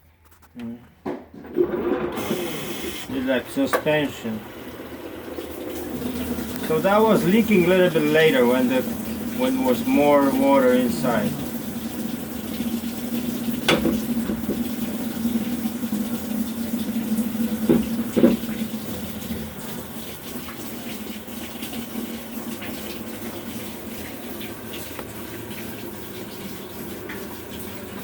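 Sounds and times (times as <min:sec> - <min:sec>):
water filling washing machine drum: 0:01.3 - 0:28.0
knocks: 0:13.6 - 0:14.7, 0:17.7 - 0:18.5.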